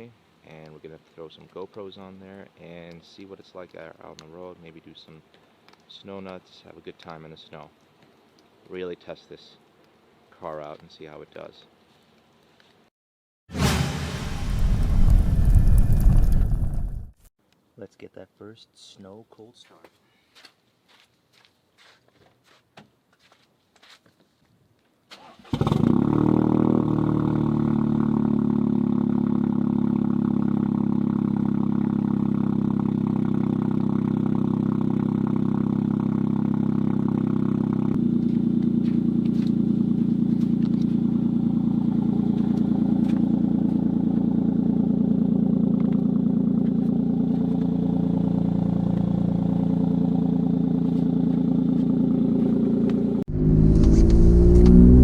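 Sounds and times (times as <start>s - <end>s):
engine note rising in pitch: 26.3s - 55.0s
car engine cold start and idle: 38.0s - 54.7s.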